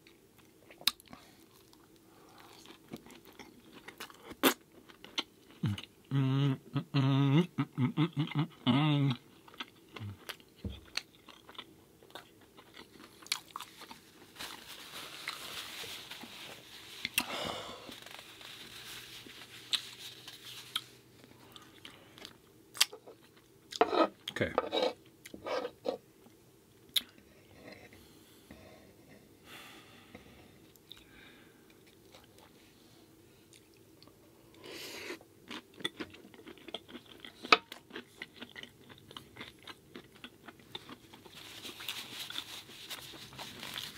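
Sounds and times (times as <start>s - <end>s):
person chewing food: 0.0s - 5.9s, 7.7s - 15.6s, 19.6s - 24.3s, 33.5s - 43.9s.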